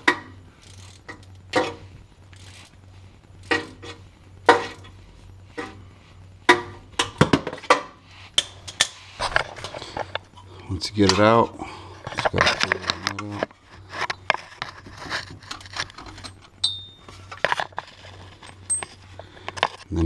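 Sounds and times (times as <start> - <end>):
metal tools clinking: 12.1 - 19.8.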